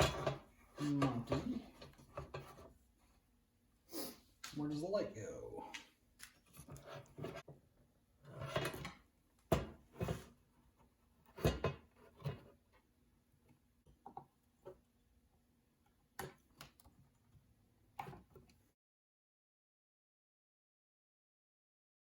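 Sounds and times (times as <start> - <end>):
knocks of objects being handled: 8.3 - 12.9.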